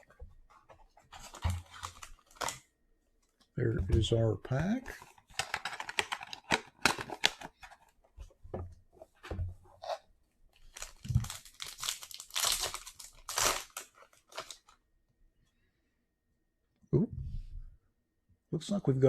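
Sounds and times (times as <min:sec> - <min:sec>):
wrapper tearing and crinkling: 0:01.2 - 0:02.6, 0:10.7 - 0:14.8.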